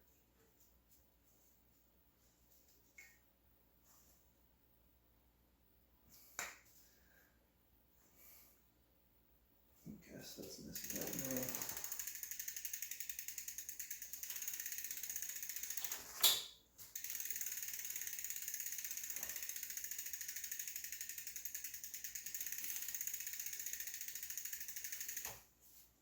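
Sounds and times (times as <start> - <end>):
bicycle hub ticking: 10.7 - 16.0, 16.9 - 25.4.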